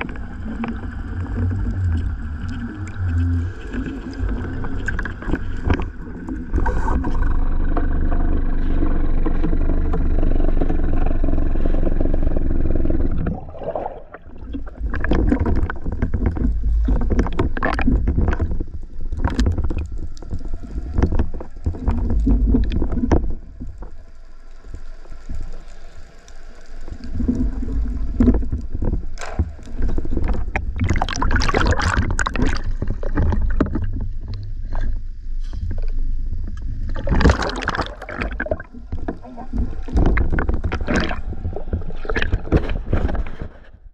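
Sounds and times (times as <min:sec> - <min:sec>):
water sloshing and gurgling: 0:00.0 - 0:43.9
knocks and scrapes: 0:14.5 - 0:23.9, 0:27.2 - 0:43.9.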